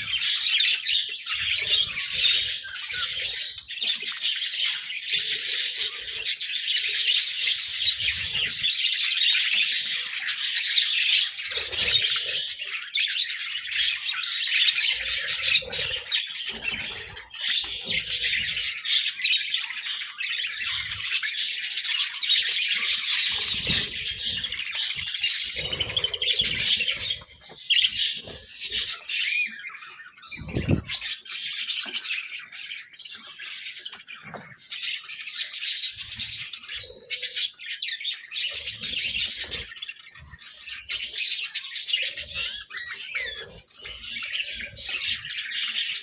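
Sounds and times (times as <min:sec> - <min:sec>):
budgerigars chirping: 0:00.0 - 0:46.0.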